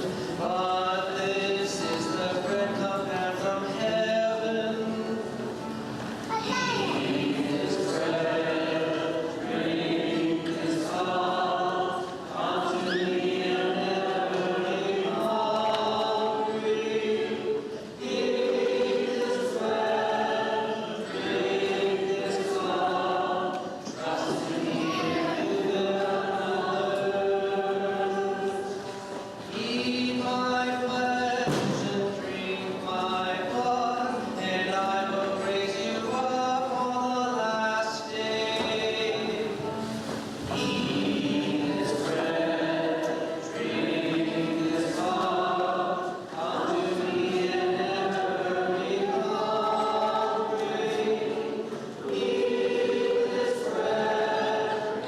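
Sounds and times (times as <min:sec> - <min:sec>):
group singing a hymn: 0:00.0 - 0:06.1, 0:06.8 - 0:55.0.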